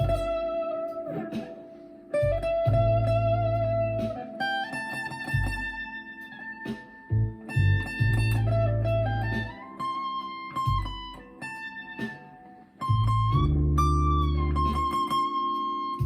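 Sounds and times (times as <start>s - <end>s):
low bass notes: 0.0s - 1.5s, 2.2s - 4.2s, 7.1s - 9.6s, 12.9s - 15.1s
overdriven electric guitar lead: 0.0s - 16.0s.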